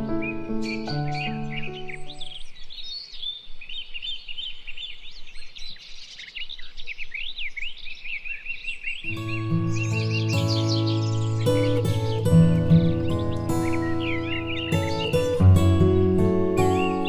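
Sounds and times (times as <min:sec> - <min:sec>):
background music: 0:00.0 - 0:02.3, 0:09.1 - 0:17.0
wild birds chirping: 0:00.0 - 0:17.0.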